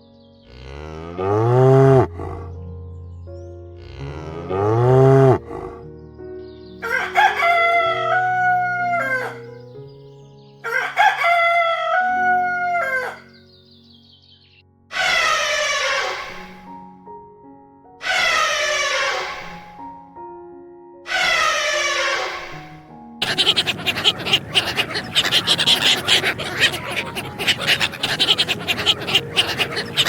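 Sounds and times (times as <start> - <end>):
soft background music: 0.0 - 30.0
rooster crowing: 6.8 - 9.5, 10.7 - 13.3, 23.2 - 30.0
low rising and falling calls: 23.2 - 30.0.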